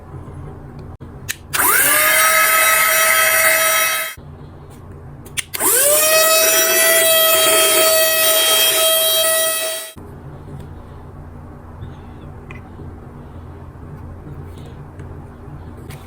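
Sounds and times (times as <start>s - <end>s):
small vacuum motor whining: 1.6s - 4.2s, 5.6s - 10.0s.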